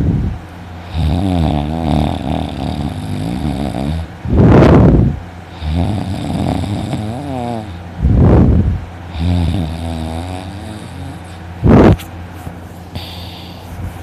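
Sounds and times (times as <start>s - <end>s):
man snoring: 0.8s - 4.8s, 5.5s - 7.8s, 9.1s - 12.0s, 13.0s - 13.6s
wavering breath: 12.9s - 14.0s.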